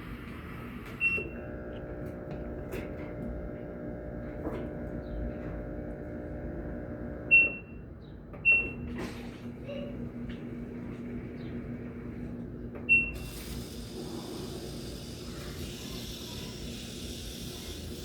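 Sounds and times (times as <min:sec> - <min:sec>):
steady hum: 0:00.0 - 0:07.5.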